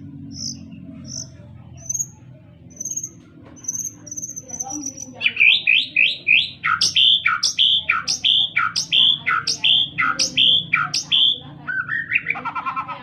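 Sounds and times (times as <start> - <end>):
bird singing whistled phrases: 2.8 - 12.4.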